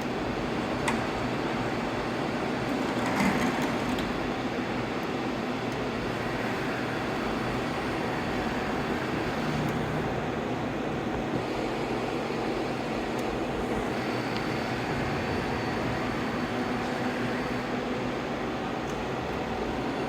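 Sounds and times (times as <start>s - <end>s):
machining center humming: 4.7s - 20.0s.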